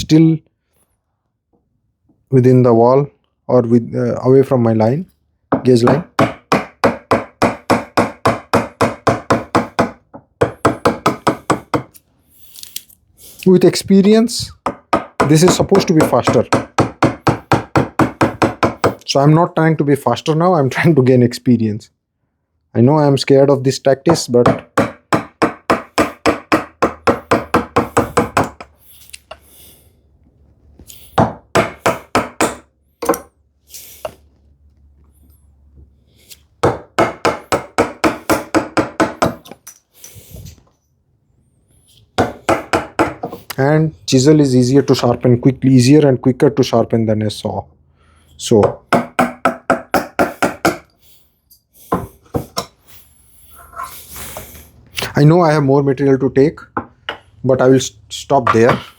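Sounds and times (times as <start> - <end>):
mallet striking a chisel: 5.5 - 12.0, 14.7 - 19.0, 24.5 - 28.7, 31.2 - 33.3, 36.6 - 39.6.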